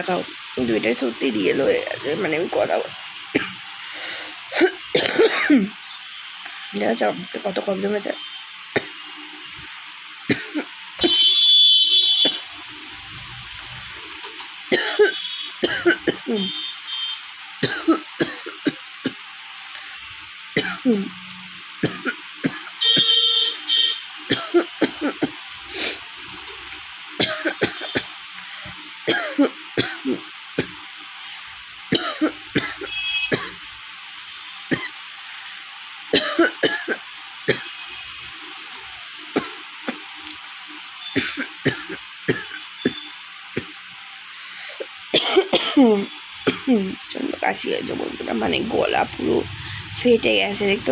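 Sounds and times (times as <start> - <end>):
woman coughing: 4.5 - 5.7, 10.3 - 11.2, 14.7 - 16.5, 17.6 - 18.8, 20.6 - 21.1, 21.8 - 23.2, 24.3 - 25.4, 27.2 - 28.1, 29.1 - 30.7, 31.9 - 33.6, 34.7 - 34.9, 36.2 - 37.6, 41.2 - 43.0, 44.7 - 47.0.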